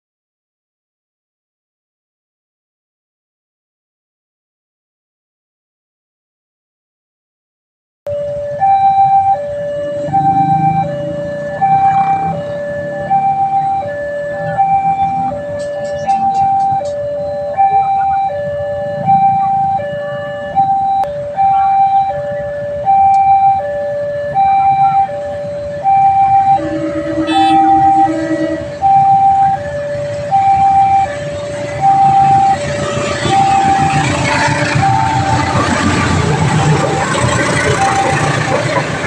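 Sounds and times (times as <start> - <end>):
two-tone crossing alarm: 8.1 - 39.0
rushing noise: 25.1 - 39.0.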